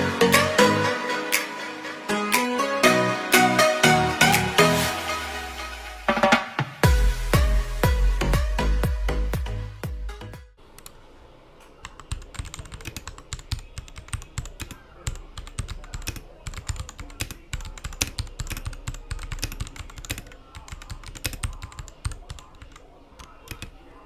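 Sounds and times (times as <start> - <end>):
mechanical keyboard typing: 11.6 - 23.8.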